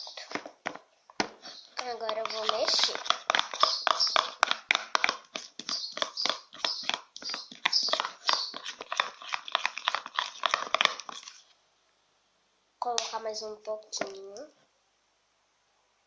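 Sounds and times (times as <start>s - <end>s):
slime squelching while stirred: 0.0s - 11.5s.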